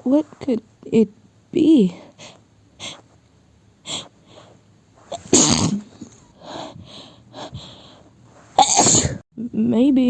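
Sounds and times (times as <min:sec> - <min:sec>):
person sneezing: 0:05.0 - 0:06.2, 0:08.6 - 0:09.2.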